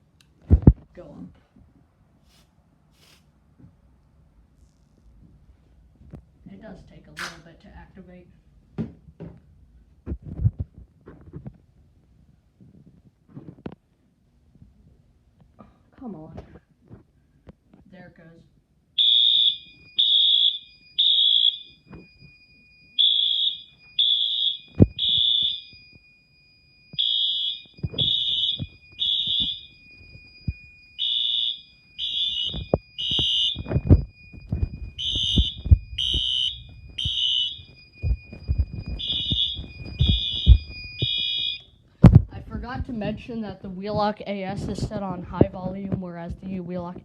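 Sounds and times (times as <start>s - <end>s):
thumps and handling noise: 8.7s - 11.8s, 12.6s - 13.9s, 26.9s - 30.8s, 32.0s - 43.2s
fire alarm horns blasting: 19.0s - 41.8s.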